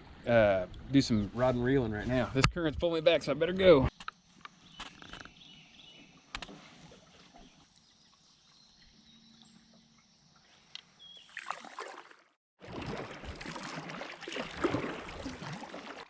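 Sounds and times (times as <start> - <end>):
water sloshing: 6.3 - 16.0.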